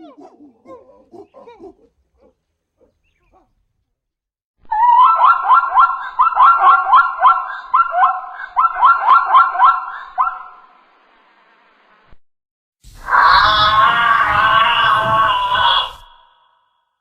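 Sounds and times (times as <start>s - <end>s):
animal high-pitched rising calls: 13.0s - 16.6s.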